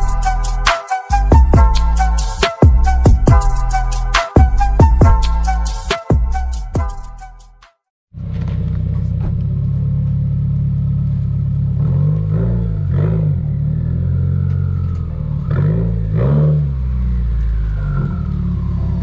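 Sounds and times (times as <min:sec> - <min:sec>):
car engine idling and revving: 0:08.1 - 0:19.0.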